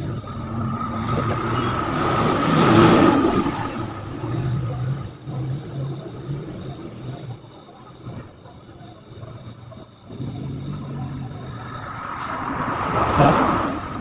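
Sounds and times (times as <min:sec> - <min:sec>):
vehicle passing by: 0:00.0 - 0:07.2, 0:10.1 - 0:14.0.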